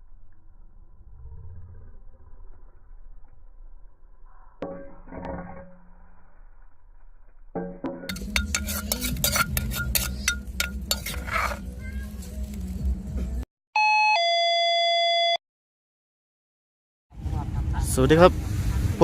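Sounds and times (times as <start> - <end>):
low hum: 0.0 - 13.4.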